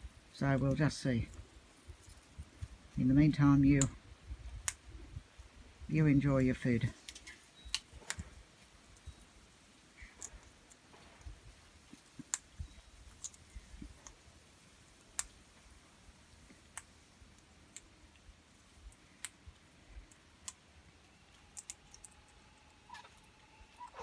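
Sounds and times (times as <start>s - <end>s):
parrot cracking seeds: 11.9s - 14.2s, 16.6s - 24.0s.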